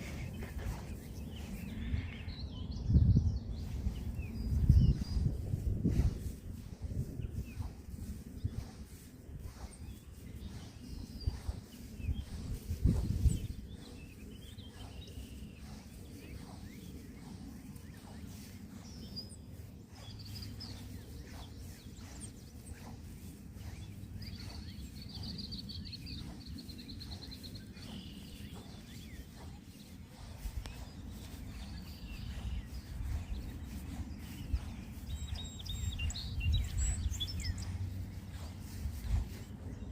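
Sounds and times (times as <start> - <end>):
birds chirping: 0.0 - 39.9
steady low rumble: 0.0 - 39.9
bird trill: 7.4 - 39.5.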